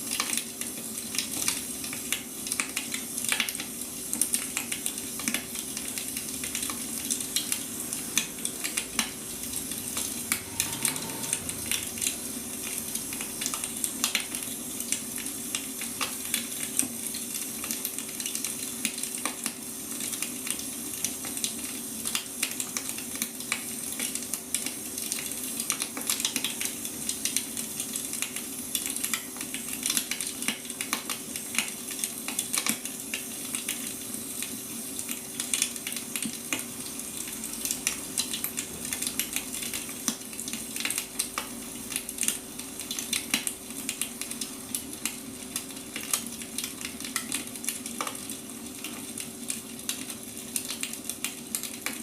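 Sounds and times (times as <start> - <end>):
wood fire crackling: 0.0 - 52.0
faint steady hum: 3.7 - 18.8.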